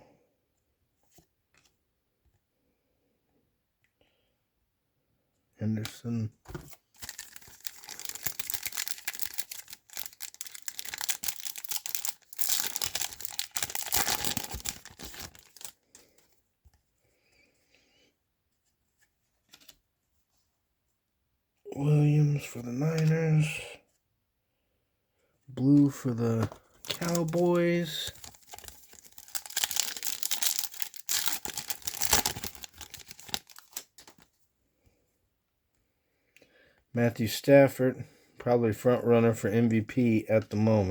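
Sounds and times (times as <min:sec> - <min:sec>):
wrapper tearing and crinkling: 0:06.9 - 0:15.8, 0:26.8 - 0:34.2.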